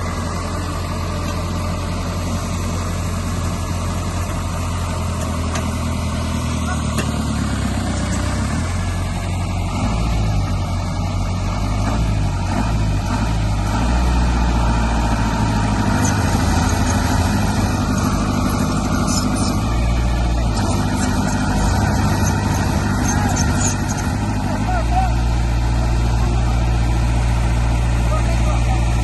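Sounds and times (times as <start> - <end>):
heavy diesel engine rumbling: 0.0 - 29.0.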